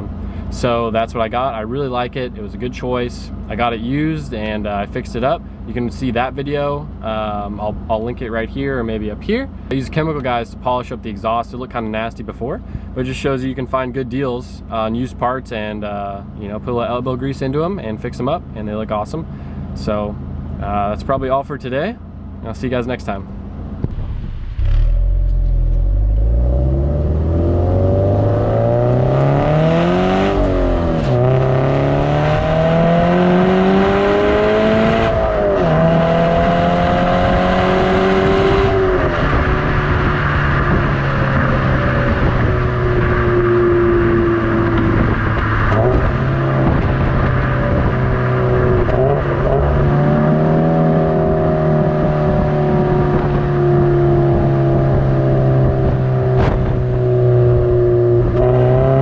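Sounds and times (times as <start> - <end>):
car engine accelerating hard: 23.7 - 59.0.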